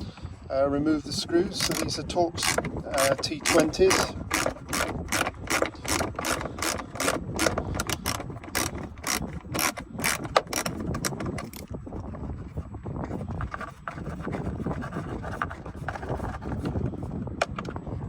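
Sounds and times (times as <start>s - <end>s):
ratchet tool clicking: 1.6s - 11.6s.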